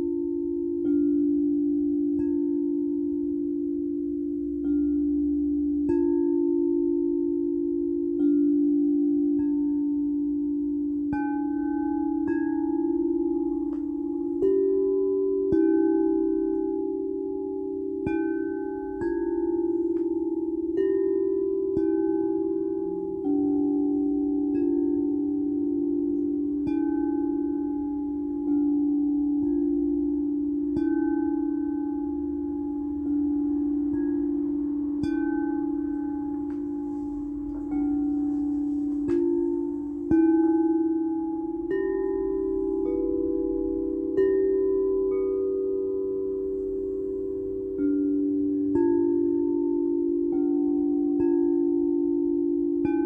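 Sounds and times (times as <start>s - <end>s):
high tinkles: 0.0s - 53.0s
singing bowls ringing: 0.0s - 53.0s.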